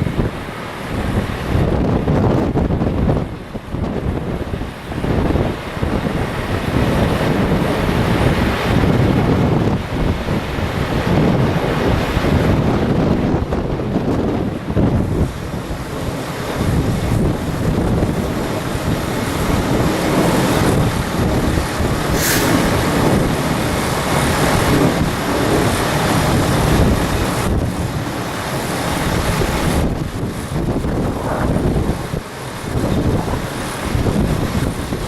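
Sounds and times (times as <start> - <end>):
wind buffeting microphone: 0.0 - 35.0
short hiss: 22.2 - 22.7.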